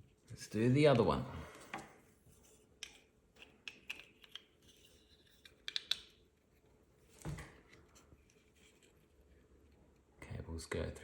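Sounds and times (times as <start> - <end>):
plastic parts clicking: 2.8 - 6.2.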